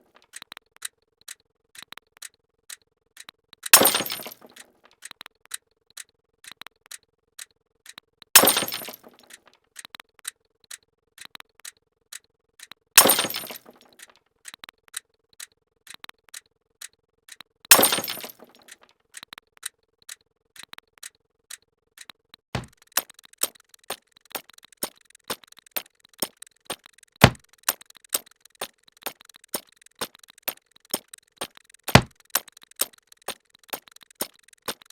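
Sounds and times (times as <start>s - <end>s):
glass shattering effect: 3.8s - 4.6s, 8.4s - 9.2s, 13.0s - 13.8s, 17.7s - 18.5s.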